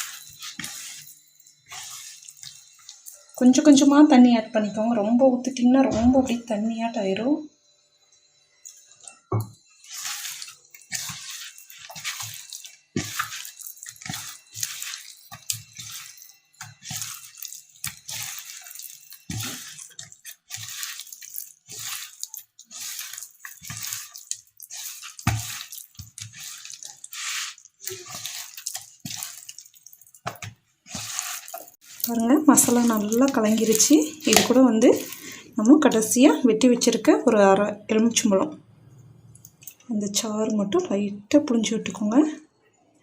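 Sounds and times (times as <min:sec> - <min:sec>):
wet squelching of kneaded fish: 0:00.0 - 0:03.6, 0:09.8 - 0:36.9.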